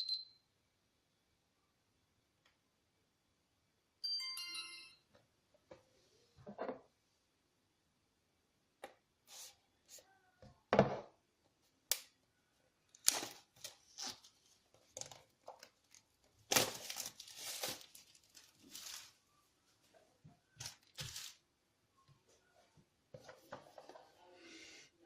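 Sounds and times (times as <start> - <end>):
wrapping rustling and tearing: 13.0 - 19.3, 20.6 - 21.4.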